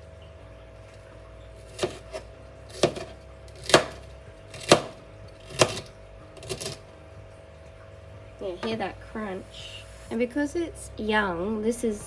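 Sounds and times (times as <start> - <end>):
knife chopping cabbage: 1.6 - 7.0.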